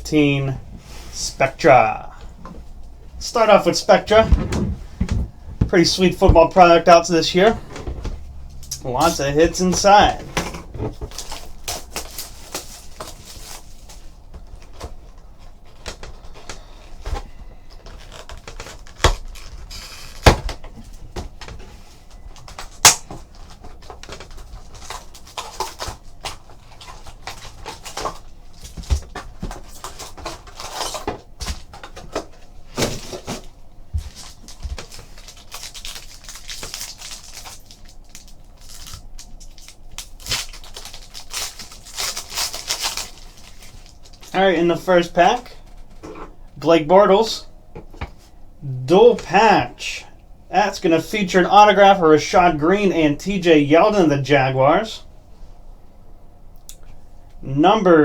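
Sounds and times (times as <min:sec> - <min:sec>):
plastic wrap and foil tearing: 0:11.1 - 0:14.8, 0:17.8 - 0:20.3, 0:22.5 - 0:31.1, 0:34.1 - 0:44.4.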